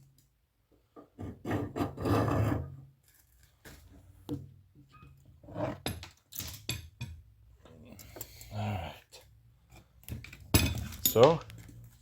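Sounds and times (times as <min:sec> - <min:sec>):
metal scraping and rasping: 0:01.2 - 0:02.9.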